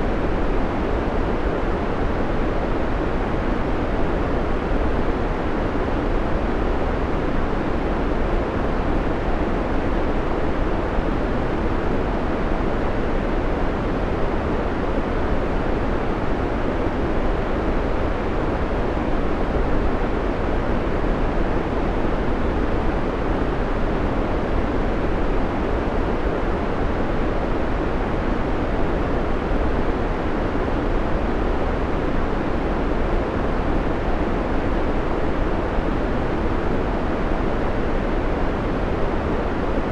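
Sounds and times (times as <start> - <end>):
white noise hiss: 0.0 - 39.9.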